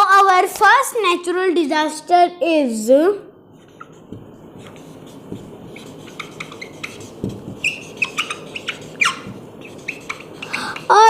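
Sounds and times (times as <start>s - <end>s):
marker squeaking on whiteboard: 3.6s - 11.0s.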